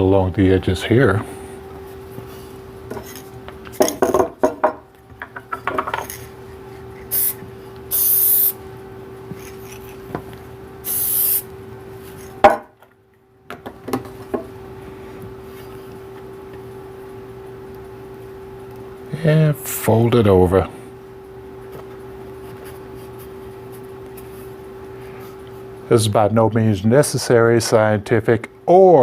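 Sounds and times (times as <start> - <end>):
steady hum: 0.0 - 29.0
aerosol spray can hissing: 7.1 - 8.6, 10.8 - 11.4.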